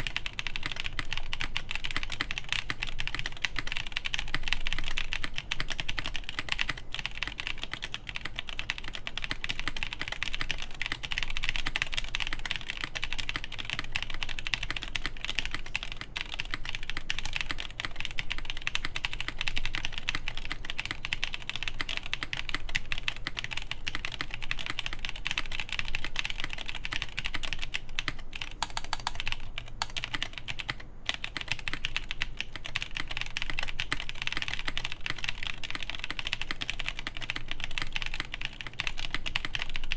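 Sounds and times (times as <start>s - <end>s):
mechanical keyboard key clacks: 0.0s - 39.9s.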